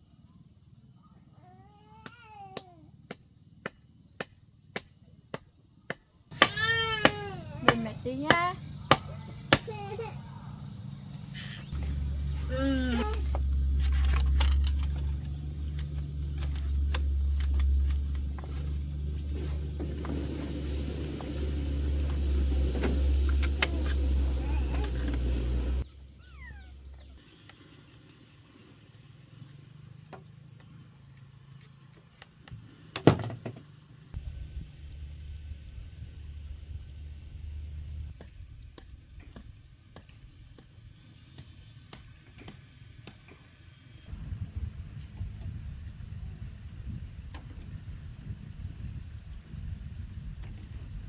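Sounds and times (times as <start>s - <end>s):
high insect drone: 0.0s - 32.9s, 33.8s - 51.0s
baby babbling cries: 6.4s - 7.6s
low hum: 10.3s - 25.9s, 34.2s - 38.1s
low steady rumble: 11.7s - 25.9s, 34.2s - 38.1s.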